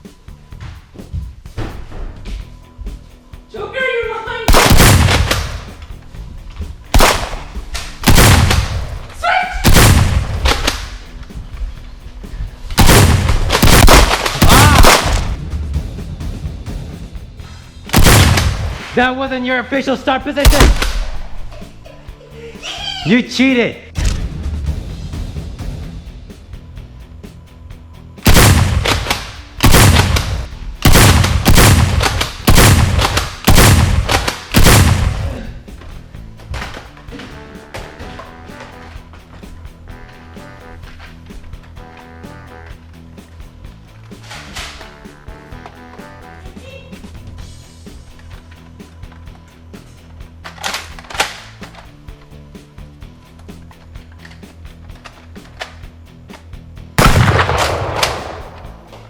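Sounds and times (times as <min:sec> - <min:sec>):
background music: 0:00.0 - 0:59.0
loud booming gunshots: 0:04.5 - 0:05.8, 0:06.9 - 0:11.0, 0:12.8 - 0:15.4, 0:17.9 - 0:19.0, 0:20.4 - 0:21.3, 0:28.3 - 0:35.5, 0:57.0 - 0:58.8
person shouting: 0:09.2 - 0:09.7, 0:14.4 - 0:14.9, 0:22.5 - 0:23.3.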